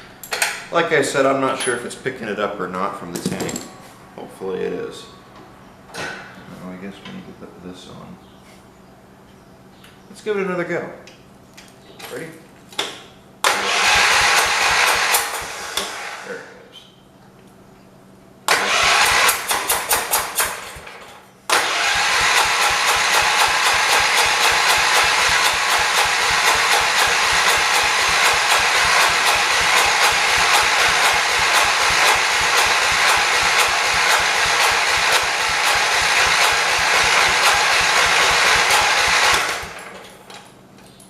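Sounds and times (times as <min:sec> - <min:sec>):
starter cranking engine: 0:13.5 - 0:16.3, 0:18.5 - 0:20.9, 0:21.5 - 0:40.0.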